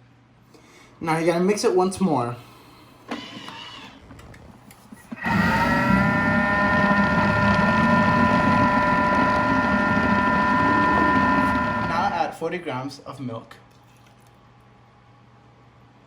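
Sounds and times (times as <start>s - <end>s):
electric mixer motor whining: 5.1s - 12.4s.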